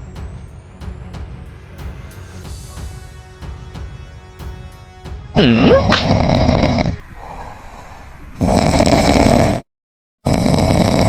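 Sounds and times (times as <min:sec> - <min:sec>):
person snoring loudly: 0:05.4 - 0:07.0, 0:08.4 - 0:11.0.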